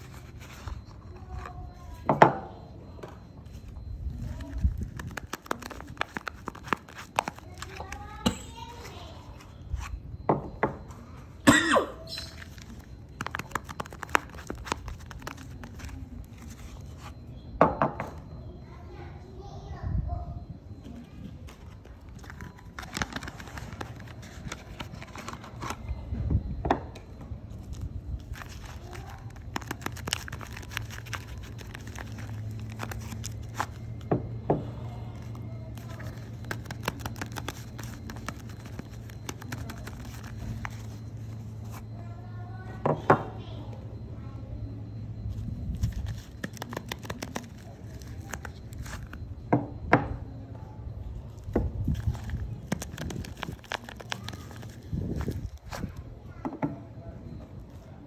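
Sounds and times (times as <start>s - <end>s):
soap crackling and scraping: 51.9s - 56.0s.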